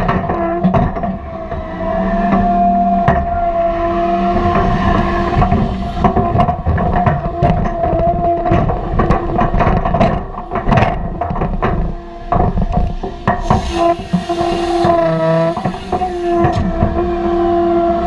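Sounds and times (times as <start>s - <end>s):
wood knocking and clattering: 0.0s - 1.7s, 4.3s - 17.1s
heavy machinery whining: 0.0s - 18.0s
burst of hiss: 13.4s - 16.5s.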